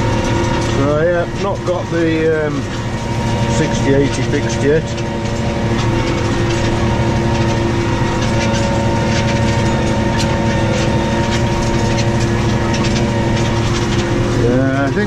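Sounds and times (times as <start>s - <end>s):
rattling and clattering: 0.0s - 15.0s
tractor engine under load: 0.0s - 15.0s.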